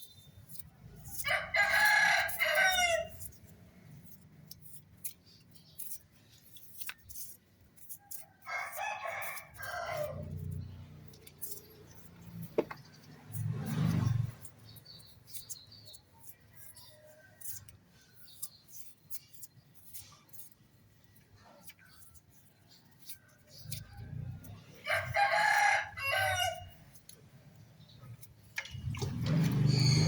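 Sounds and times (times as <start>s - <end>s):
rooster crowing: 1.2s - 3.1s, 8.4s - 10.3s, 24.8s - 26.7s.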